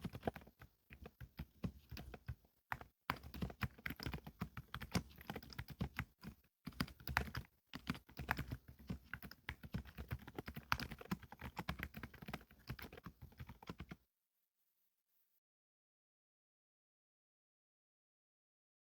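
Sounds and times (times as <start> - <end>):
keyboard typing: 0.0 - 14.0.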